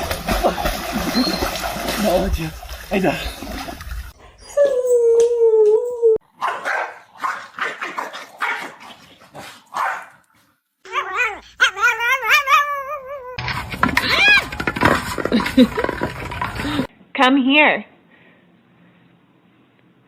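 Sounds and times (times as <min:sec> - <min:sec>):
dog howling: 0:10.9 - 0:13.4.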